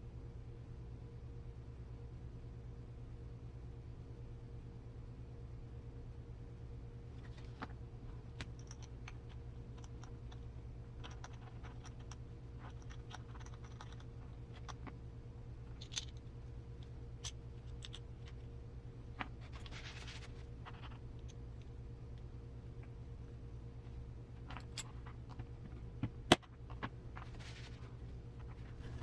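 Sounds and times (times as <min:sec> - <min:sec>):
steady low hum: 0:00.0 - 0:29.0
clicks of small parts handled: 0:08.4 - 0:15.0, 0:15.7 - 0:16.3, 0:17.2 - 0:18.4.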